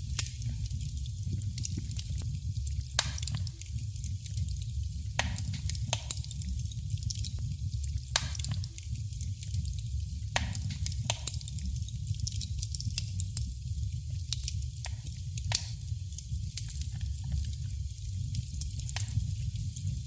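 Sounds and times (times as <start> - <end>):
wood fire crackling: 0.0 - 20.0
sharp pops and snaps: 0.1 - 13.5, 14.2 - 17.6, 18.3 - 19.9.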